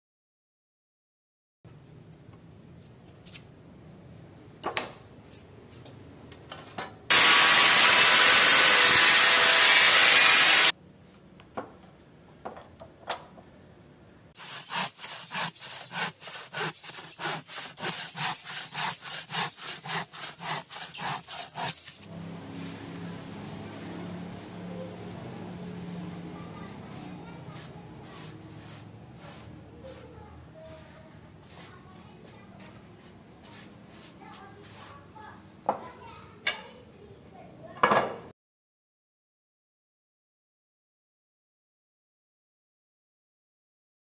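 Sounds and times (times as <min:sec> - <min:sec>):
hand saw cutting wood: 0:07.1 - 0:10.7, 0:14.4 - 0:23.2.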